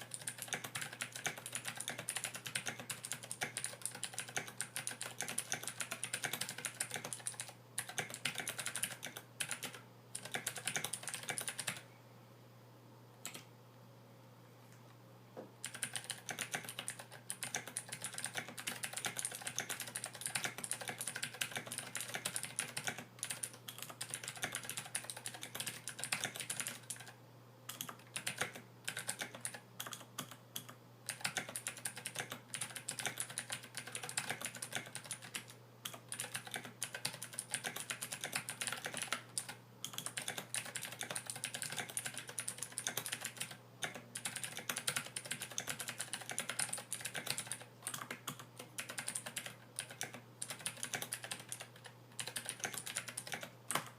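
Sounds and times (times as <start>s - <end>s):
fast mechanical keyboard typing: 0.0s - 11.8s, 15.6s - 53.9s.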